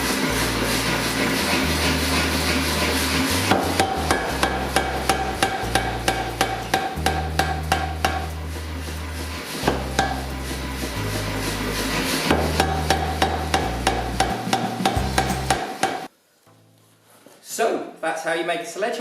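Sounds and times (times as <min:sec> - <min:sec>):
steady low hum: 0:00.0 - 0:14.4
hammer blows on steel: 0:03.3 - 0:11.2, 0:12.2 - 0:16.1.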